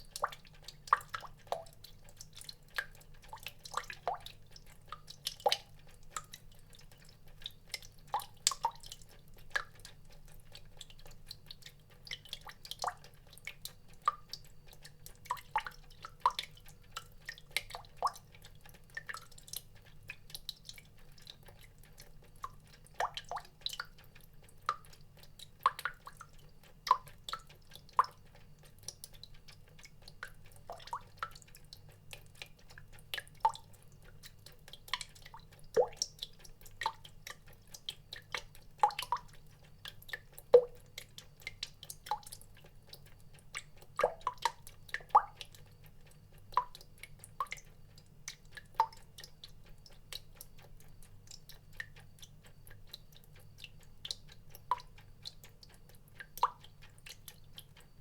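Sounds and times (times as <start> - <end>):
water drops plinking into water: 30.2 - 31.8, 34.3 - 43.0, 43.6 - 47.7, 51.3 - 55.6.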